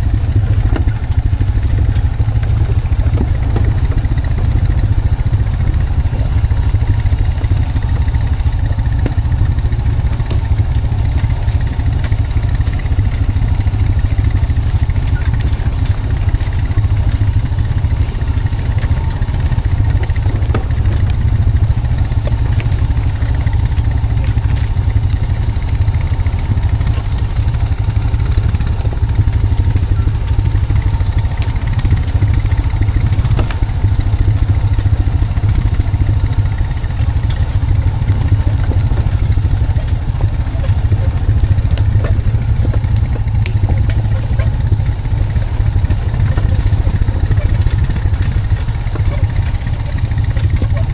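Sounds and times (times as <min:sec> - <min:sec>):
atv engine running: 0:00.0 - 0:50.9.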